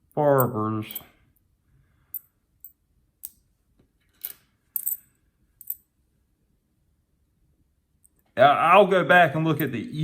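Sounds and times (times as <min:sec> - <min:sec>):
coins clinking: 0:04.1 - 0:05.8.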